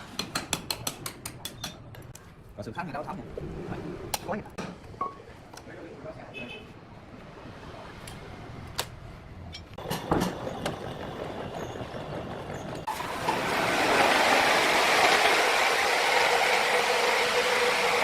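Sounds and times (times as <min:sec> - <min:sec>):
sharp knocks and clatters: 0:00.0 - 0:02.2, 0:09.6 - 0:12.9.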